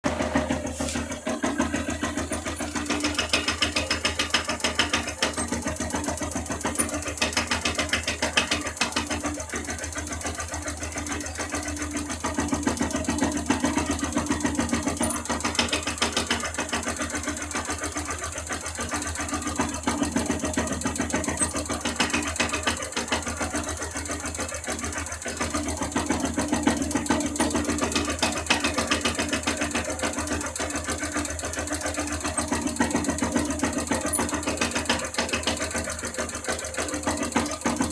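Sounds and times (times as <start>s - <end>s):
fast mechanical clatter: 0.0s - 37.9s
motorcycle engine idling: 0.0s - 37.9s.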